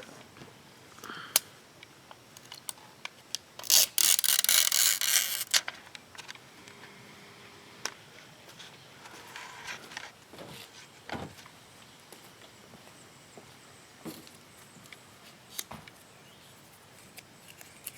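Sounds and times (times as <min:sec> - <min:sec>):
razor blade scraping glass: 0:03.6 - 0:05.6.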